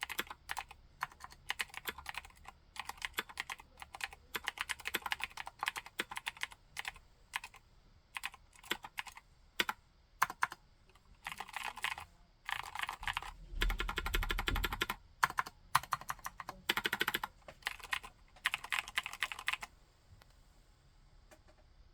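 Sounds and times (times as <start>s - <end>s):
mechanical keyboard typing: 0.0s - 7.6s, 8.2s - 10.6s, 11.2s - 19.7s.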